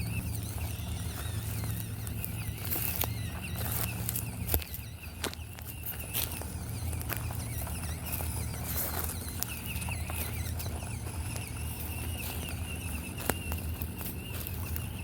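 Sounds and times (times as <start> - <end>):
small electric motor whining: 0.0 - 15.0.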